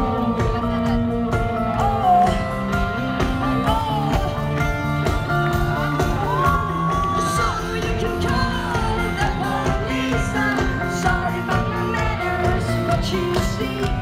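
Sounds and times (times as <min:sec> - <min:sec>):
rock song with guitars and drums: 0:00.0 - 0:14.0.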